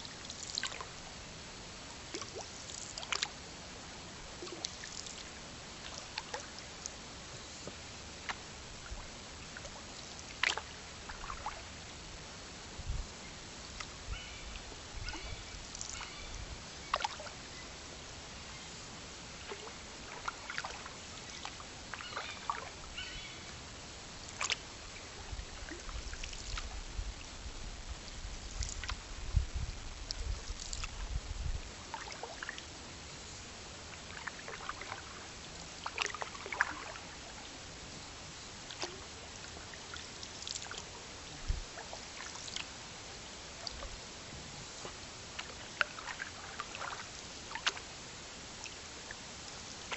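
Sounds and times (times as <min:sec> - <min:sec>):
canoe paddle splashing: 0:00.0 - 0:01.0, 0:02.0 - 0:03.4, 0:04.3 - 0:06.9, 0:08.2 - 0:11.9, 0:13.6 - 0:17.6, 0:19.3 - 0:23.6, 0:24.2 - 0:27.3, 0:31.8 - 0:32.7, 0:33.8 - 0:38.0, 0:38.6 - 0:42.7, 0:43.4 - 0:49.2
steady hiss: 0:00.0 - 0:49.9.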